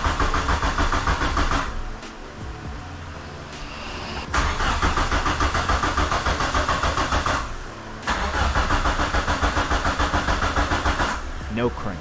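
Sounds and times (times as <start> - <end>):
starter cranking car engine: 4.2 - 11.4.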